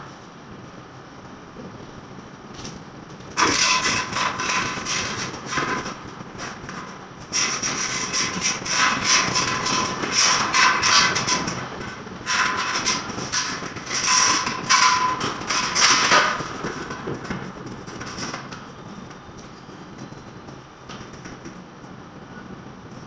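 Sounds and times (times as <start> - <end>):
harsh rasping strokes on wall: 3.4 - 17.2.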